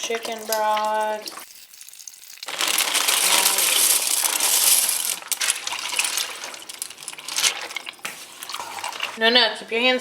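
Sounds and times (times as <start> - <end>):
broth pouring into a pot: 0.0 - 9.2
rustling: 2.4 - 9.2.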